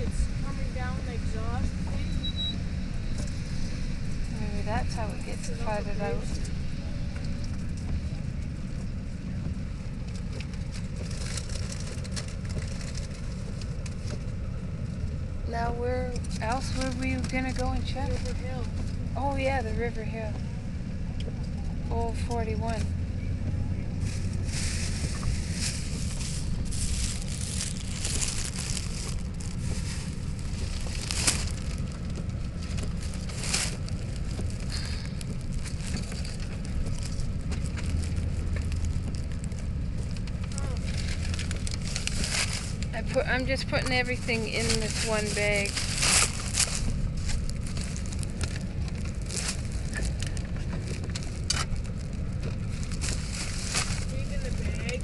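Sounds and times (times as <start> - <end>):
car engine and tyres rumbling: 0.0 - 55.0
plastic bag crinkling: 24.0 - 55.0.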